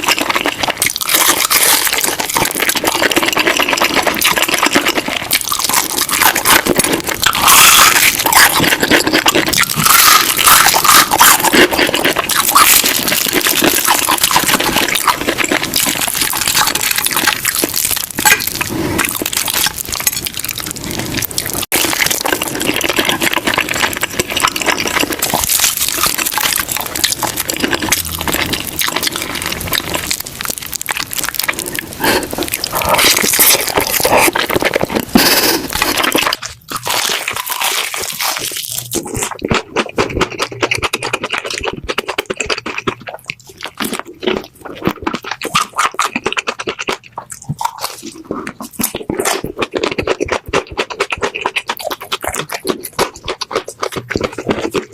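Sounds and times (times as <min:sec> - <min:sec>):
chewing crispy fried chicken: 0:00.0 - 0:54.9.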